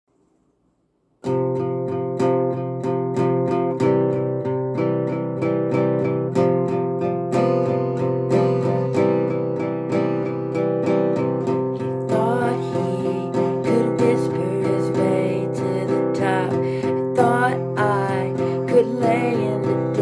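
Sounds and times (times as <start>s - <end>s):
acoustic guitar strumming: 1.2s - 20.0s
person singing: 7.8s - 9.4s, 11.4s - 20.0s.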